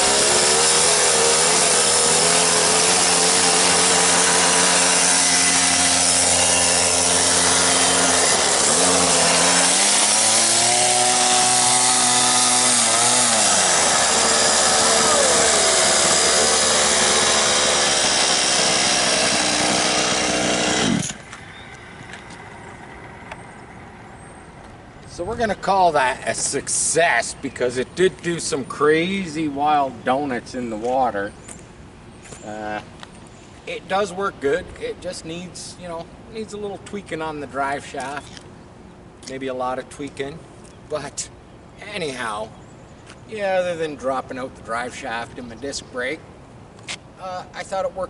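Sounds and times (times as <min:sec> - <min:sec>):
small engine revving: 0:00.0 - 0:23.5.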